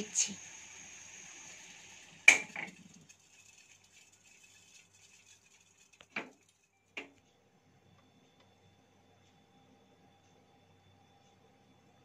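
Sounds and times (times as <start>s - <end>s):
gas burner hissing: 0.0s - 3.2s, 5.9s - 7.2s
hot pot crackling: 0.0s - 7.2s.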